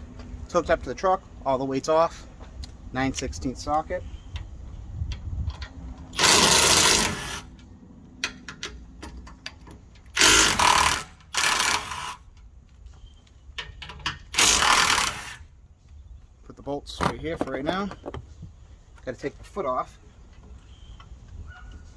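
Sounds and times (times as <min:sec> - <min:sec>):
power tool driving bolts: 0:06.1 - 0:07.6, 0:08.2 - 0:12.3, 0:13.8 - 0:15.5.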